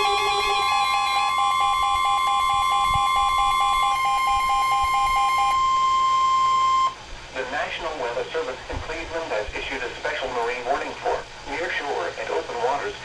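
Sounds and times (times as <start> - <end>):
steady warning alarm tone: 0.0 - 7.0.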